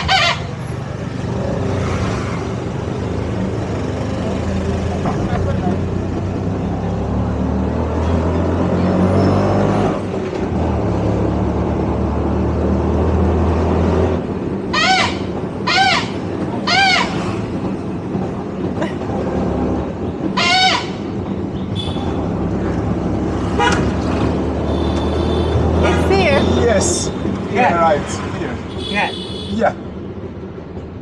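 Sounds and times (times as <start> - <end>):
rickshaw engine running: 0.0 - 31.0
horn honks: 21.7 - 22.2, 24.6 - 27.2, 28.7 - 29.8.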